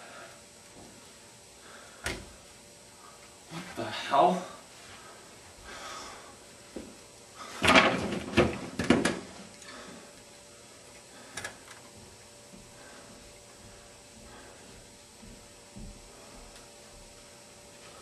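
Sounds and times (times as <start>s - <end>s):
loud knocks and clattering: 7.6s - 9.3s.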